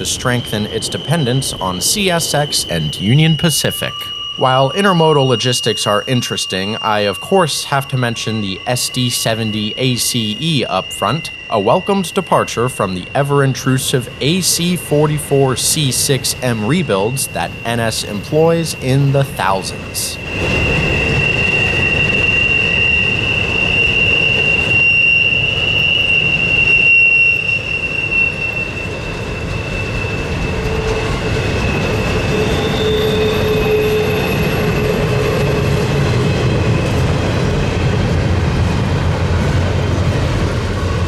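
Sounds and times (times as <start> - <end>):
freight cars rumbling: 0.0 - 27.0, 28.1 - 41.0
train wheels squealing: 0.0 - 41.0.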